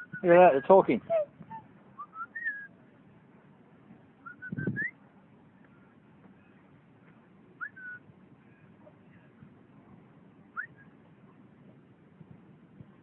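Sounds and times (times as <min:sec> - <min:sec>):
swans whistling calls: 0:00.0 - 0:02.8, 0:07.6 - 0:08.0.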